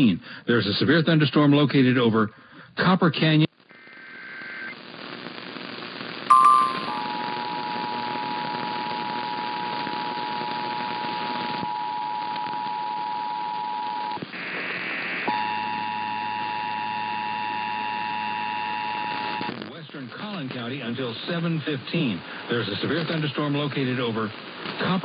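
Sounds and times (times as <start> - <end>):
radio hiss: 3.5 - 6.3, 14.2 - 15.3, 19.1 - 25.0
two-tone attention signal: 6.3 - 7.0
high-pitched noise: 6.3 - 7.1.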